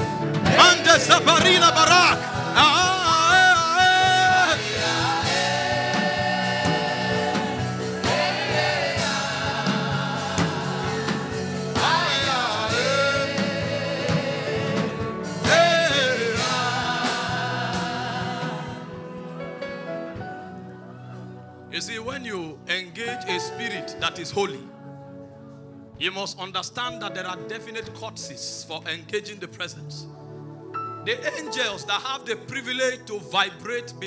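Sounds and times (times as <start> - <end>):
instrumental backing: 0.0 - 28.7
voices singing held phrases: 0.5 - 11.0.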